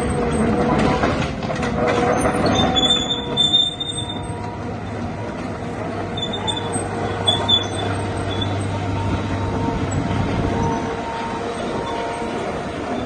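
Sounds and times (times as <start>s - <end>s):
excavator engine running: 0.0s - 13.0s
high-pitched metallic squeals: 1.9s - 5.0s, 5.8s - 13.0s.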